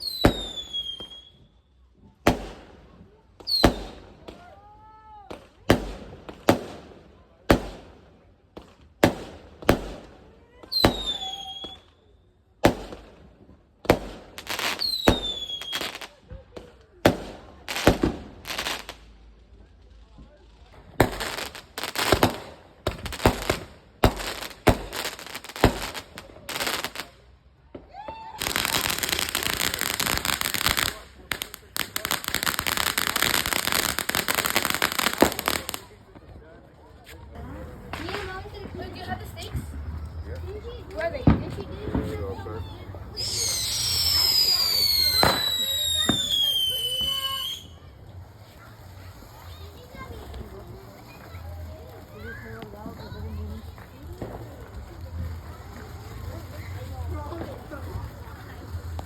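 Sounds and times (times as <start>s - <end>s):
fireworks banging: 0.0s - 1.4s, 2.0s - 11.9s, 12.6s - 59.0s
falling firework whistle: 0.0s - 1.7s, 10.7s - 12.1s, 14.7s - 16.0s, 27.8s - 29.5s, 43.1s - 47.8s.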